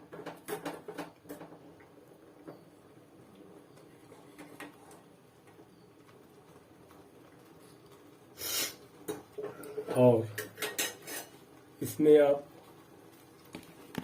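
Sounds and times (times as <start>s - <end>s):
food cooking in a pan: 0.0s - 14.0s
metal spoon scraping a pan: 9.7s - 11.4s.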